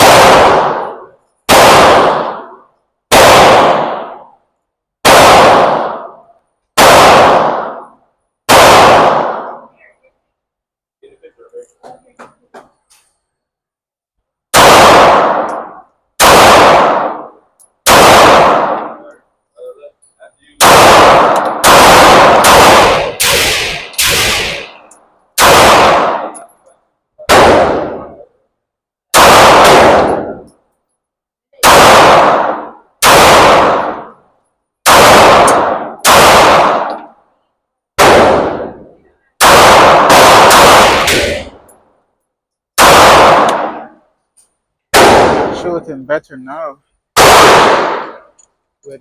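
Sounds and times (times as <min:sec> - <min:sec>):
pistol shots echoing indoors: 0:00.0 - 0:09.8, 0:14.5 - 0:19.2, 0:20.6 - 0:26.6, 0:29.1 - 0:30.5, 0:31.6 - 0:37.2, 0:38.0 - 0:41.8, 0:42.8 - 0:44.0, 0:47.2 - 0:48.4.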